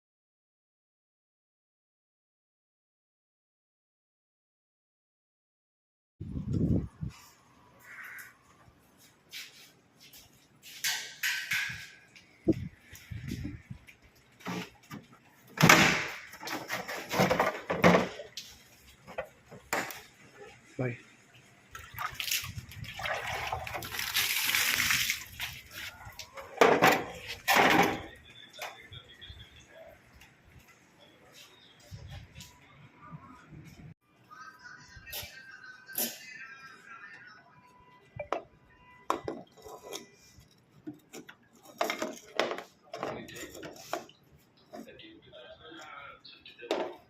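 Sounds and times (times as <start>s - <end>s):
water running and splashing: 21.5s - 26.5s
loud water splashes: 21.8s - 25.8s
clinks and knocks of hard objects: 39.1s - 44.2s.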